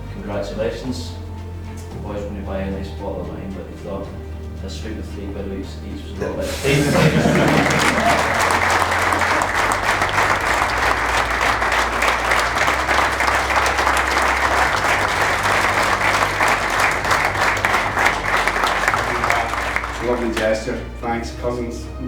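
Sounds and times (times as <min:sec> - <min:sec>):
crowd applauding: 0:06.4 - 0:21.0.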